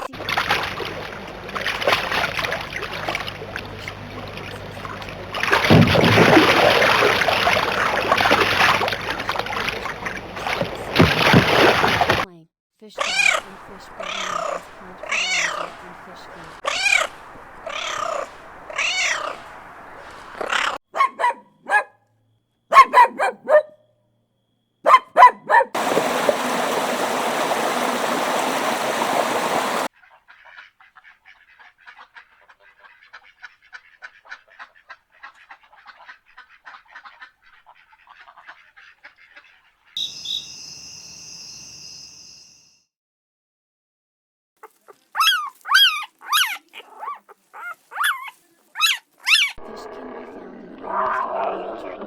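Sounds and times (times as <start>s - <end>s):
cat meowing: 13.0s - 19.5s
brief calls: 13.0s - 20.8s.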